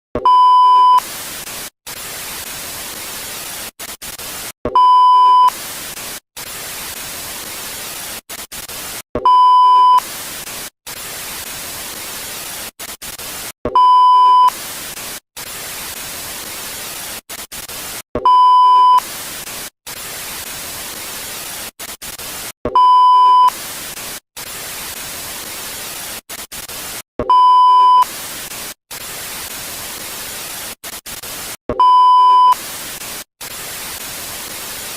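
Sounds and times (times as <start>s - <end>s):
loud steady beep: 0.3s - 1.0s, 4.8s - 5.5s, 9.3s - 10.0s, 13.8s - 14.5s, 18.3s - 19.0s, 22.8s - 23.5s, 27.3s - 28.1s, 31.8s - 32.6s
tv static hiss: 0.5s - 34.9s.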